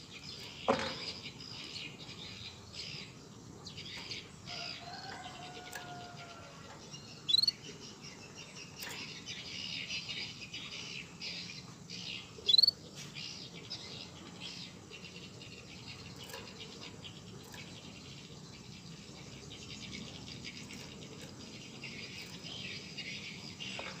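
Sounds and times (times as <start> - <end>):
high-pitched chirring: 7.3 - 7.6, 12.5 - 12.7
bird calling: 12.4 - 12.8.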